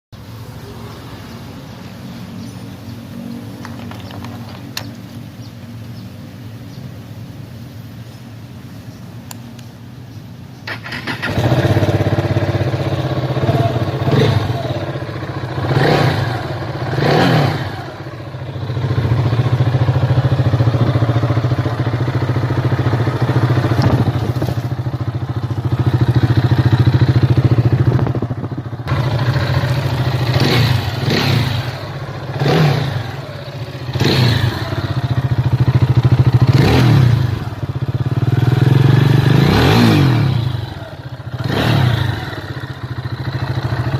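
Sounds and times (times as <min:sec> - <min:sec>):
motorcycle engine revving: 0:10.6 - 0:43.9.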